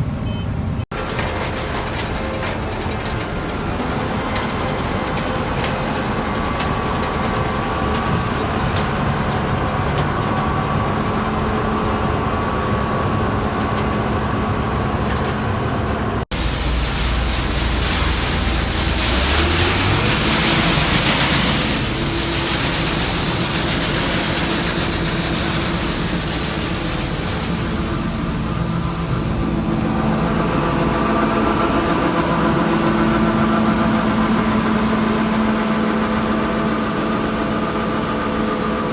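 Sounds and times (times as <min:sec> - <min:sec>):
combine harvester engine drone: 0:00.3 - 0:38.9
loud rushing hiss: 0:16.3 - 0:32.5.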